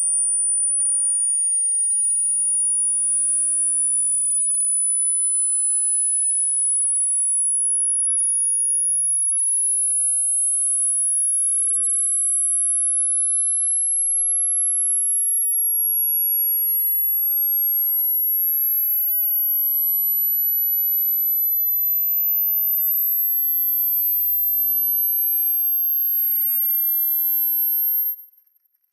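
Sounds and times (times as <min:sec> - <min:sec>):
high-pitched electronic sine tone: 0:20.4 - 0:28.7.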